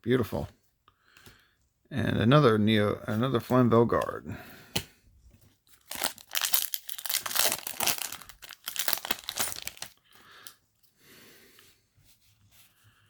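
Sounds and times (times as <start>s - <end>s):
foil wrapper crinkling and tearing: 5.7s - 10.6s.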